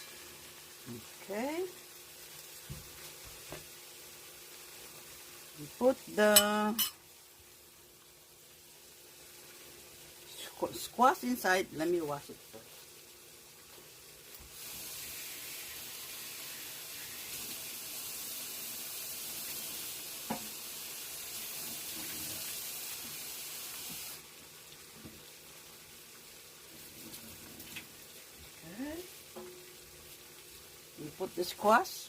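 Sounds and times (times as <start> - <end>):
stir fry sizzling in pan: 0.0 - 32.0
kitchen tap running: 14.3 - 25.3.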